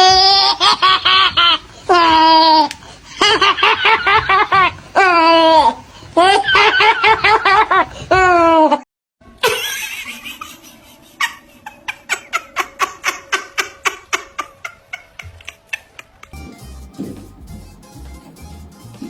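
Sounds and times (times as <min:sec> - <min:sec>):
rhythmic laughter: 0:03.1 - 0:04.9, 0:09.4 - 0:19.0.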